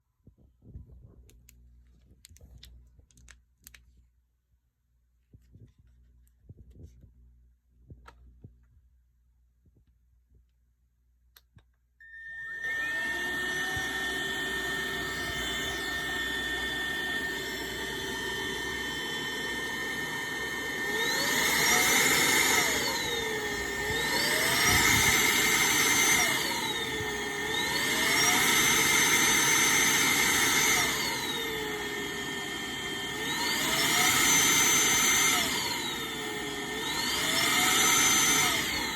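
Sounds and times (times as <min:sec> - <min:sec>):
vacuum cleaner motor whine: 0:12.0 - 0:38.9.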